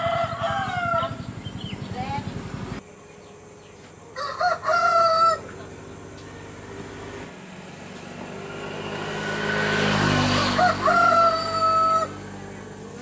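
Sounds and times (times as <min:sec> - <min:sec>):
rooster crowing: 0:00.0 - 0:01.5, 0:04.1 - 0:07.2, 0:09.8 - 0:13.0.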